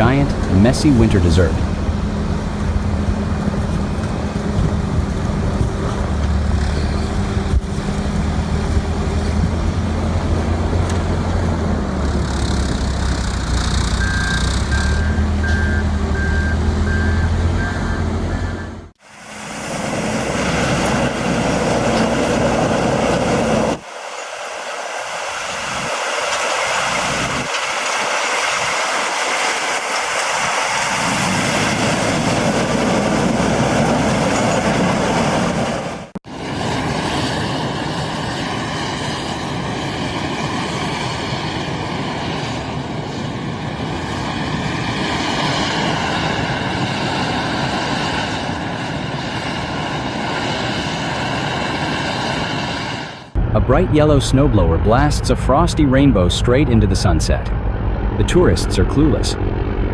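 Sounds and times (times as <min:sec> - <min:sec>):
machine rushing noise: 0:00.0 - 0:17.6
heavy vehicle engine running: 0:00.0 - 0:23.9, 0:45.1 - 0:59.9
reversing beeps: 0:13.5 - 0:18.9.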